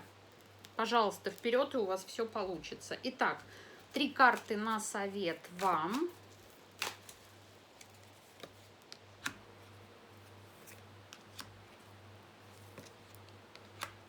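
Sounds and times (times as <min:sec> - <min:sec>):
cards clicking and snapping: 0:06.7 - 0:09.5, 0:10.6 - 0:11.8, 0:12.5 - 0:14.0.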